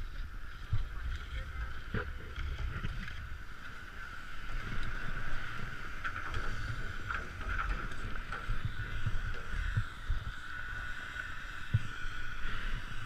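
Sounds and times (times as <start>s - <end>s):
steady high-pitched hum: 0.0s - 13.0s
wind rumbling on microphone: 0.0s - 13.0s.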